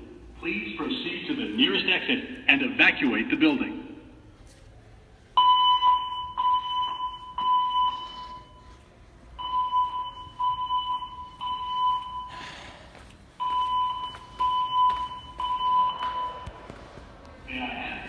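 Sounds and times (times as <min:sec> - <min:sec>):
fire alarm beeping: 0:05.3 - 0:18.0.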